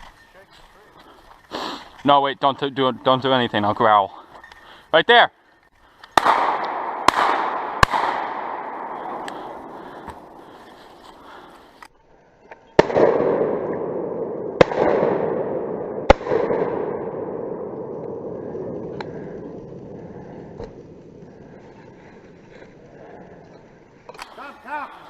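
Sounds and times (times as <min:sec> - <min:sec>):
shotgun shots echoing: 0:06.2 - 0:10.6, 0:12.8 - 0:19.1.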